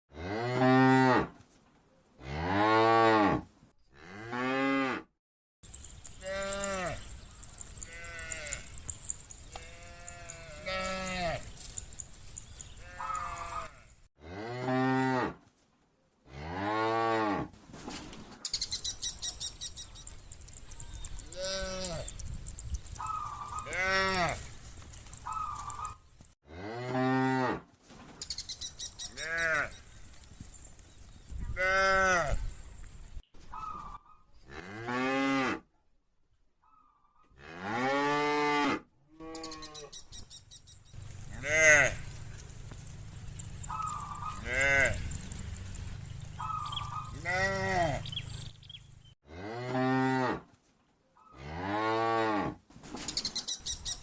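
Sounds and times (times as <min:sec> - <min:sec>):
cows mooing: 0:05.7 - 0:15.3, 0:21.0 - 0:27.5, 0:41.0 - 0:50.3.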